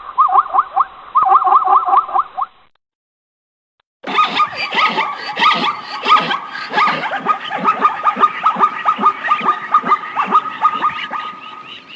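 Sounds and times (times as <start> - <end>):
zebra barking calls: 4.1 - 11.9.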